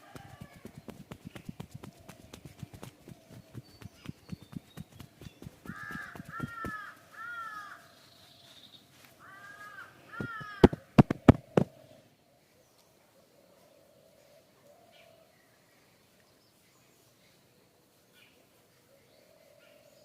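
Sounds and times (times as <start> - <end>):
rapid hand tapping: 0.0 - 6.9, 10.2 - 11.7
crow cawing: 5.6 - 7.9, 9.2 - 10.9
loud sharp smacks: 10.2 - 11.7.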